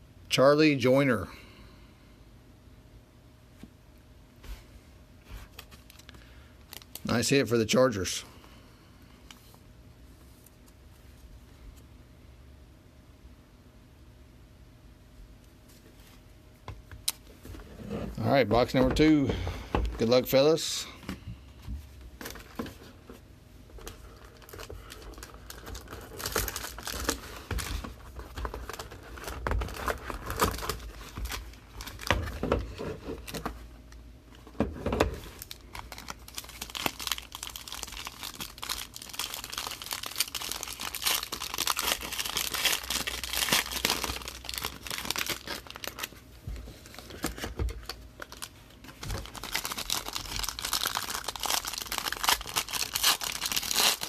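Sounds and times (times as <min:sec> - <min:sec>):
plastic wrapping torn and crinkled: 0:06.7 - 0:07.2, 0:23.8 - 0:33.4, 0:35.1 - 0:46.2, 0:46.8 - 0:54.0.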